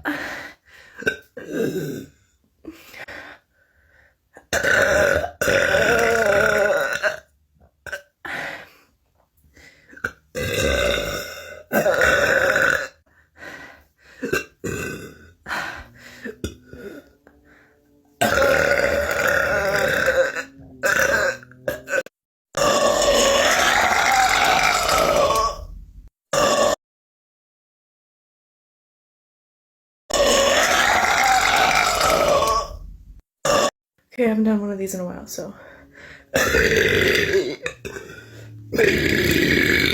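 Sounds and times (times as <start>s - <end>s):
person burping: 0.9s - 2.2s, 4.4s - 8.2s, 9.9s - 13.0s, 14.2s - 26.8s, 30.1s - 32.8s, 33.4s - 33.7s, 35.6s - 39.9s.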